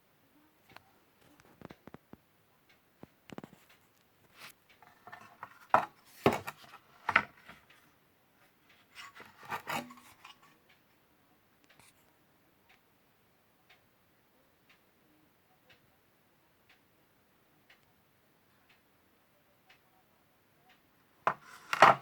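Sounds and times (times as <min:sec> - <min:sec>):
rubbing scrapes: 0:21.3 - 0:22.0.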